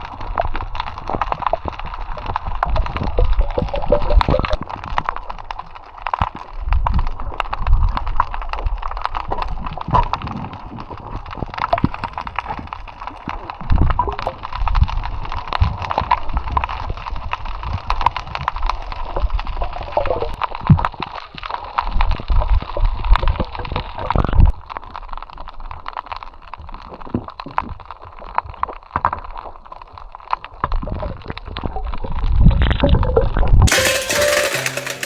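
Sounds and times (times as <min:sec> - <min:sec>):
wind rumbling on microphone: 0:00.0 - 0:21.0.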